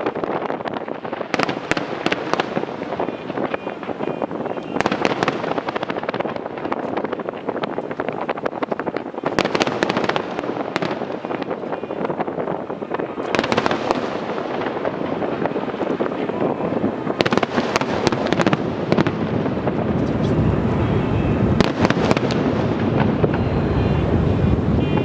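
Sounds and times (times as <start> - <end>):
fireworks crackling: 0.0 - 25.0
fireworks sharp cracks: 0.0 - 25.0.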